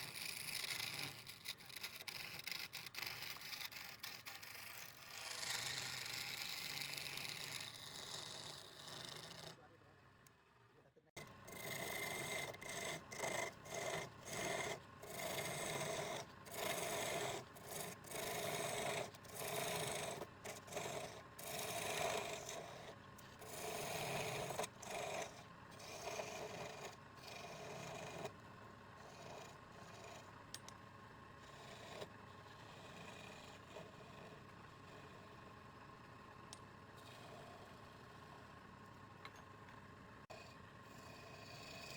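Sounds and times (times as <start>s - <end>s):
quiet steady rubbing: 0.0s - 9.6s, 11.5s - 28.4s, 29.0s - 30.4s, 31.4s - 35.7s
rasping strokes against wood: 0.0s - 9.6s, 11.5s - 28.4s.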